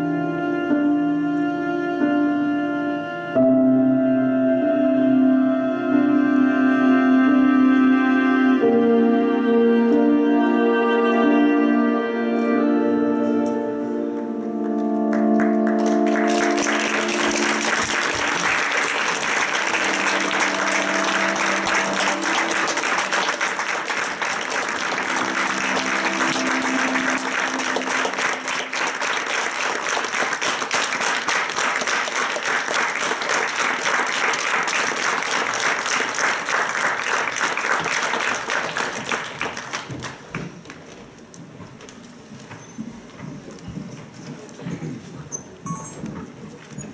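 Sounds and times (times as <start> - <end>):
held music notes: 0.0 - 40.2
audience applauding: 14.1 - 40.9.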